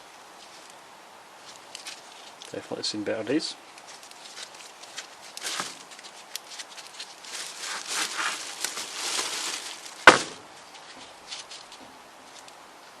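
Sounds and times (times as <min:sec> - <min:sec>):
sharp knock: 0:10.1 - 0:10.4.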